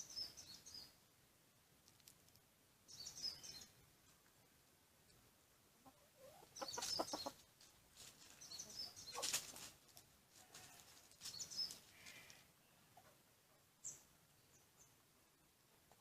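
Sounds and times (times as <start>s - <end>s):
birds chirping: 0.0s - 1.0s, 2.8s - 3.8s, 5.9s - 7.5s, 8.3s - 9.3s, 11.2s - 13.1s
bird clucking: 5.8s - 7.4s.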